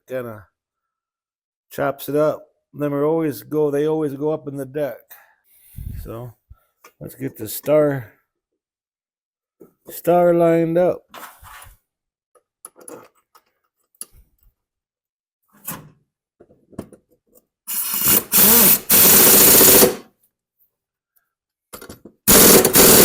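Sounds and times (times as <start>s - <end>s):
impact wrench rattling: 22.3s - 23.0s.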